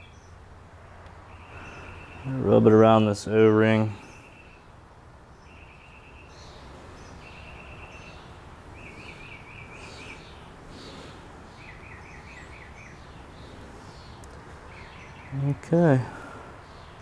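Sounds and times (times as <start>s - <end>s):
steady background noise: 0.0s - 17.0s
bird singing trilled phrases: 1.3s - 10.5s, 11.5s - 17.0s.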